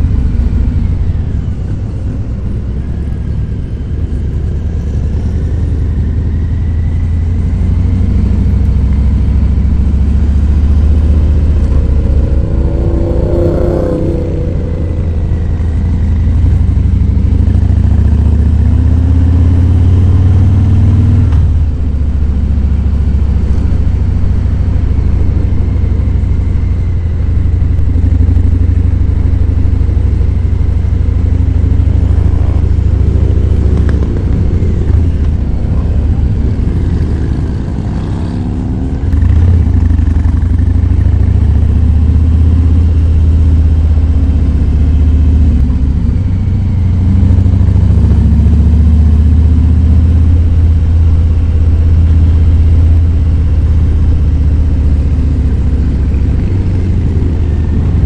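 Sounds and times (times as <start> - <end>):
motorcycle engine rumbling: 0.0 - 58.0.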